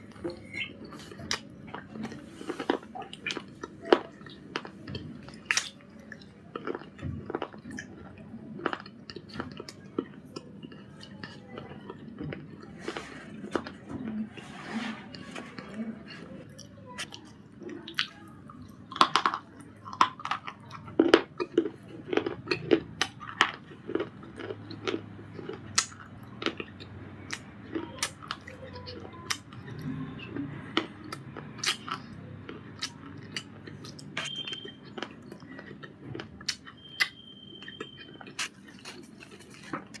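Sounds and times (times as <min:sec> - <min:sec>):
baked clay crunching: 0:37.9 - 0:40.0.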